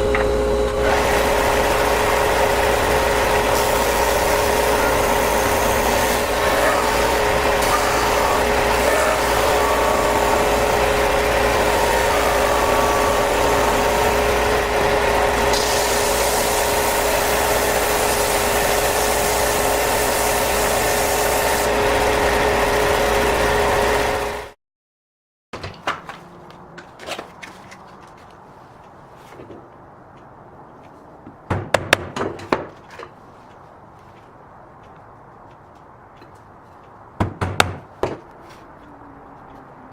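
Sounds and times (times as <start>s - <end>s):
power tool motor running: 0.0s - 24.6s
tool hissing on wood: 0.8s - 24.3s.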